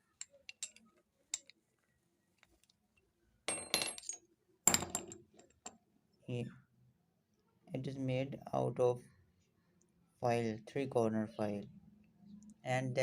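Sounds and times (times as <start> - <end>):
small metal pieces clinking: 0.1 - 1.5, 3.5 - 4.2.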